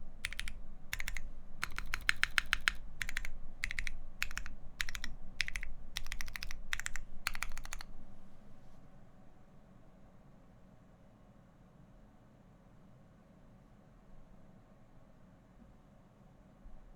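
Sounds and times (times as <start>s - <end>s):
mechanical keyboard typing: 0.2s - 7.9s.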